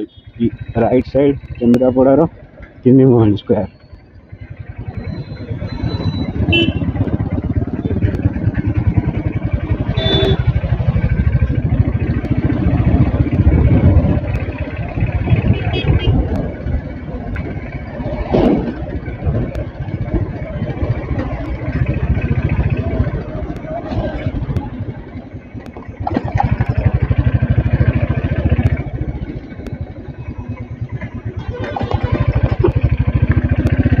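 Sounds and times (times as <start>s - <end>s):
motorcycle engine running: 0.0s - 34.0s
wind buffeting microphone: 4.8s - 31.4s.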